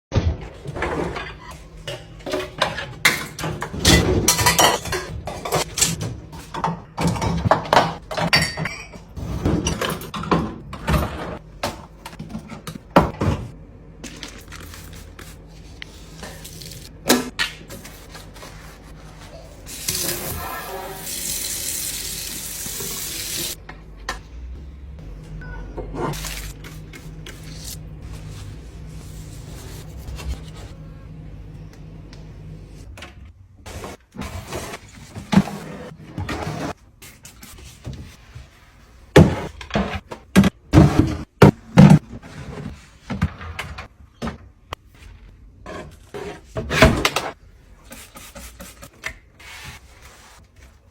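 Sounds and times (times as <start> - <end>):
dishes and utensils clattering: 0.6 - 11.4.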